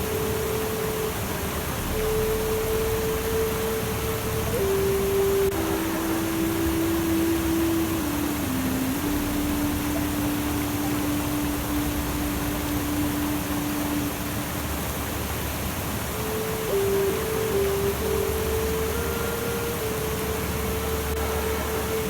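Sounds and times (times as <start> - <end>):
rushing water-like noise: 0.0 - 22.0
slow melody of low notes: 0.0 - 22.0.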